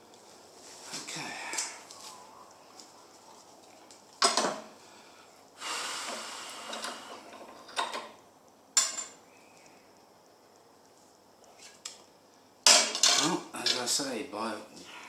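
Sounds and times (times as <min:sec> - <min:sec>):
handling of metal parts: 0:08.8 - 0:09.2, 0:12.7 - 0:13.9
metal tools clinking: 0:08.8 - 0:09.2, 0:12.7 - 0:13.9.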